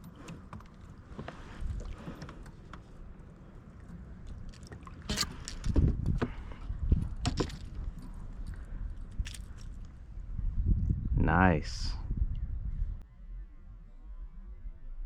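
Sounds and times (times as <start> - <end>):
light clicks and rustles: 0.0 - 10.0.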